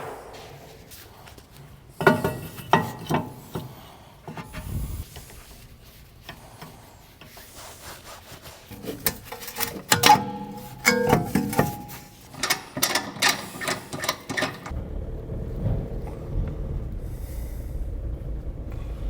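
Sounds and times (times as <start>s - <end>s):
metal scraping: 8.7s - 14.8s
metal parts clanking: 9.0s - 14.7s.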